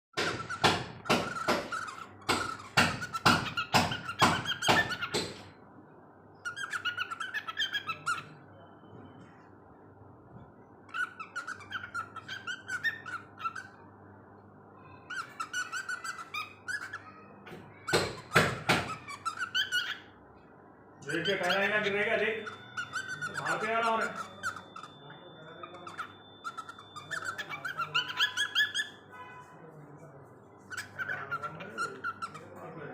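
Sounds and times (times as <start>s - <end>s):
cockatiel chattering warble: 0.2s - 5.4s, 6.5s - 8.4s, 15.1s - 17.2s, 21.1s - 29.0s, 30.7s - 32.7s
cockatiel sharp calls: 0.2s - 5.4s, 6.5s - 8.4s, 10.9s - 13.8s, 15.1s - 20.1s, 21.1s - 29.4s, 30.7s - 32.7s.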